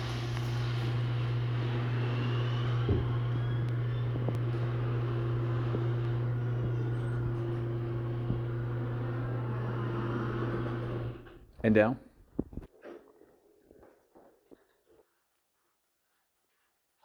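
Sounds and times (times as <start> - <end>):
garage door opener motor hum: 0.0 - 11.9.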